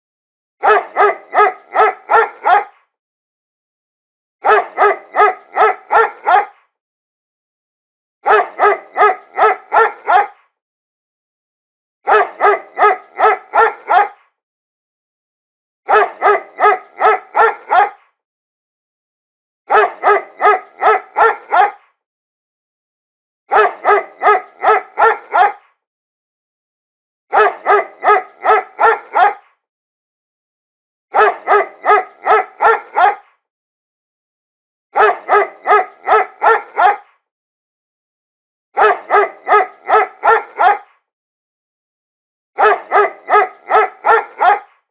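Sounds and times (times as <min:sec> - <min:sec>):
dog barking: 0:00.6 - 0:02.9, 0:04.4 - 0:06.7, 0:08.2 - 0:10.5, 0:12.0 - 0:14.3, 0:15.9 - 0:18.2, 0:19.7 - 0:22.0, 0:23.5 - 0:25.8, 0:27.3 - 0:29.6, 0:31.1 - 0:33.4, 0:34.9 - 0:37.2, 0:38.8 - 0:41.1, 0:42.6 - 0:44.8.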